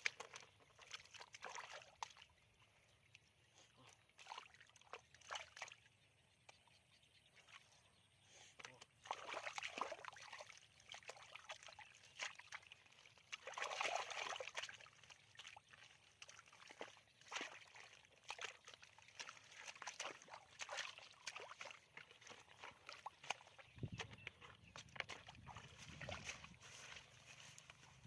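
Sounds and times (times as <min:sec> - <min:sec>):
small wet slaps and clicks: 0:00.0 - 0:02.3, 0:08.6 - 0:26.4
muddy water sloshing and splashing: 0:00.0 - 0:28.0.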